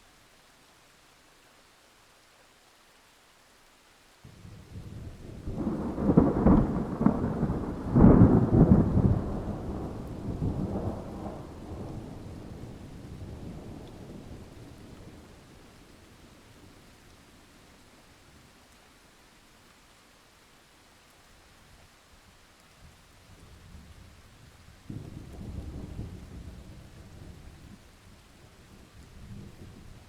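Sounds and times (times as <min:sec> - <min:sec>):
thunder rumbling and crackling: 0:04.3 - 0:16.0, 0:23.4 - 0:30.0.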